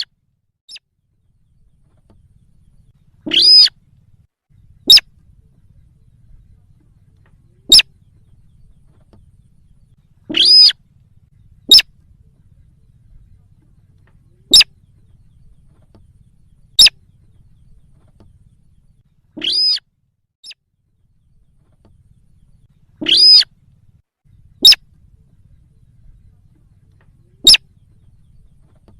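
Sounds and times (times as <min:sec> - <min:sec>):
harsh bird calls: 0:01.8 - 0:03.8, 0:04.6 - 0:11.9, 0:12.6 - 0:19.8, 0:21.3 - 0:23.5, 0:24.5 - 0:28.9
short sharp bird notes: 0:03.2 - 0:03.8, 0:19.3 - 0:19.8, 0:23.0 - 0:23.5.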